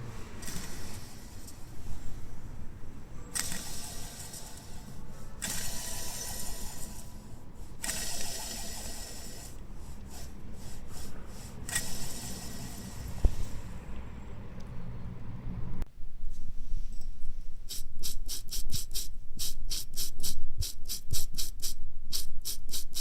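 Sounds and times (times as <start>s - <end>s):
alternator grinding: 0.0s - 15.9s
car engine idling: 0.0s - 15.9s.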